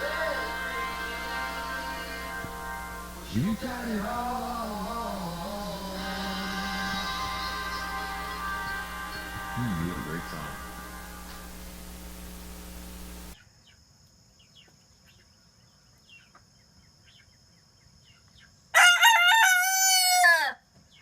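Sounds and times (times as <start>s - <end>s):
music: 0.0s - 11.8s
faint small bird chirps: 13.4s - 18.6s
rooster crowing: 18.7s - 20.6s.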